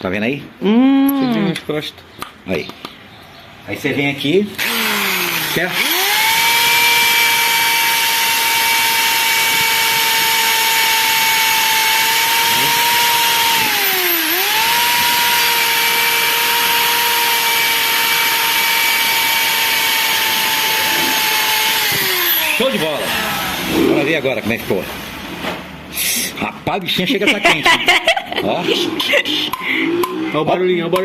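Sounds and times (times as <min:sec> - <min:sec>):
electric drill motor whining: 0:04.6 - 0:23.9.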